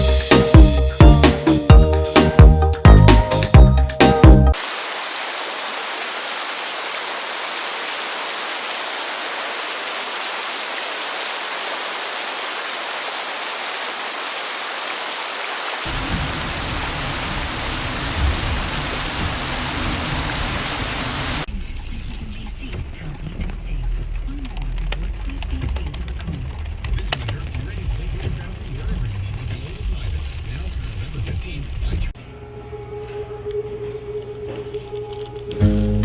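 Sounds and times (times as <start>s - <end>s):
rain hissing: 3.1s - 21.5s.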